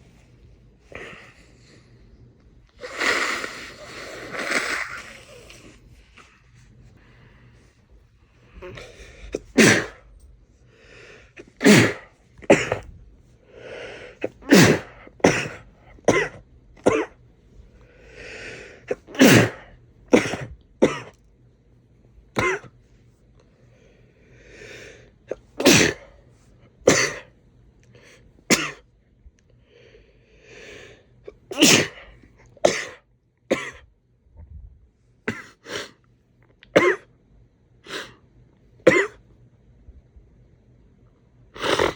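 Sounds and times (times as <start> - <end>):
man sneezing: 8.6 - 10.0, 11.4 - 12.8, 14.3 - 17.1, 18.9 - 21.1, 25.4 - 26.1, 31.5 - 32.0.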